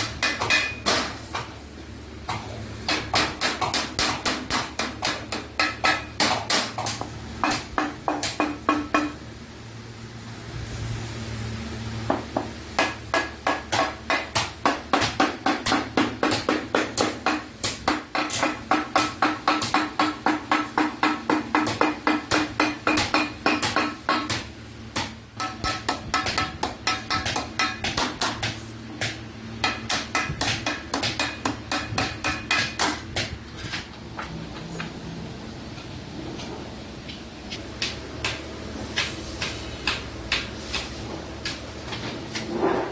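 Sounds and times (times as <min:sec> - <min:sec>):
hammer striking sheet metal: 0:12.8 - 0:33.8.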